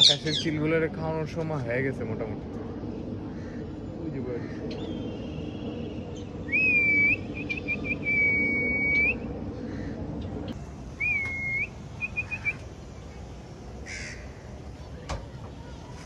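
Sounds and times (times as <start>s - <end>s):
high clear whistling: 4.7s - 9.4s, 10.9s - 12.7s.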